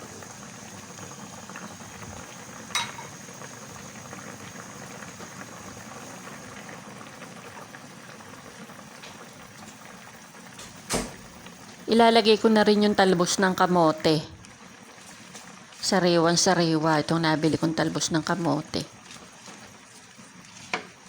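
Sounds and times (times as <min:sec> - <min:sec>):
broth boiling and bubbling: 0:00.0 - 0:21.0.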